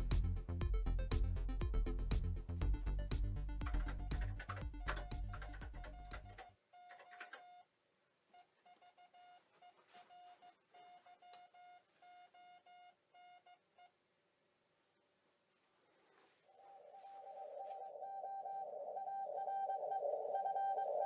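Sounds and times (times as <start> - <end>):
morse code beeping tone: 3.6 - 6.5.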